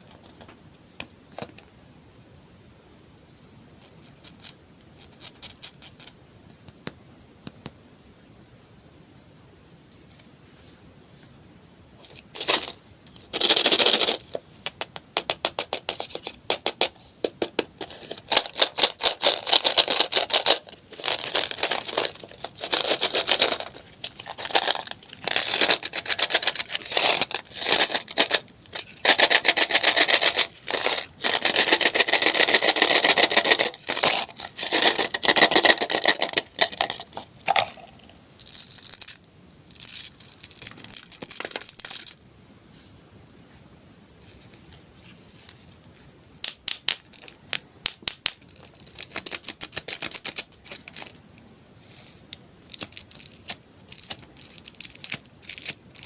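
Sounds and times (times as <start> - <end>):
plastic wrappers crinkling and tearing: 18.0 - 37.8.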